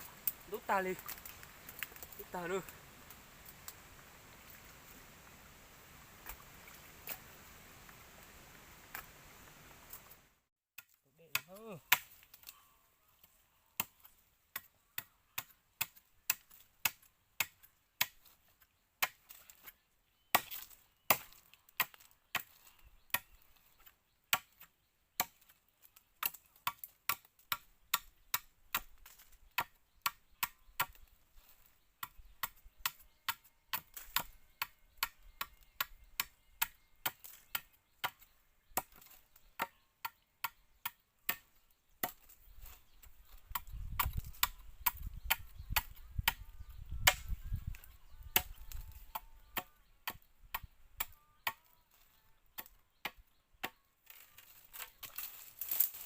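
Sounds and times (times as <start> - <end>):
chopping strikes into wood: 10.8 - 12.4, 13.8 - 18.3, 19.0 - 19.3, 20.4 - 23.3, 38.8 - 42.8, 43.4 - 46.4, 47.0 - 51.6.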